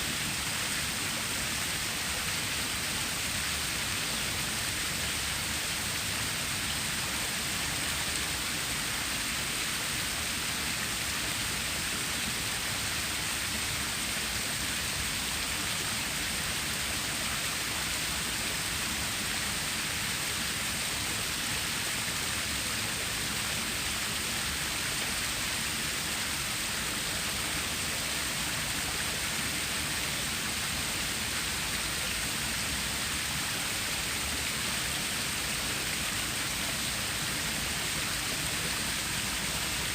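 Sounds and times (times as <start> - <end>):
stream water rushing: 0.0 - 39.9.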